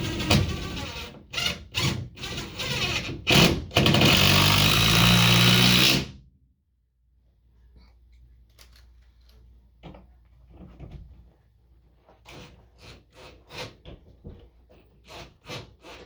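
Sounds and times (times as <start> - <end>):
power drill running: 0.0 - 6.0.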